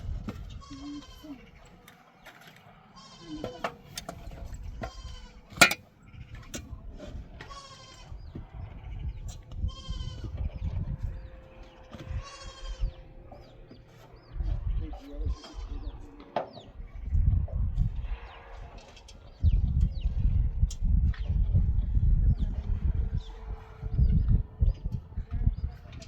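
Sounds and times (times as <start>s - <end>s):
sheep and goats bleating: 0.5s - 1.6s, 2.8s - 3.6s, 4.6s - 6.5s, 7.4s - 8.2s, 9.6s - 10.4s, 11.0s - 13.2s, 15.1s - 16.3s.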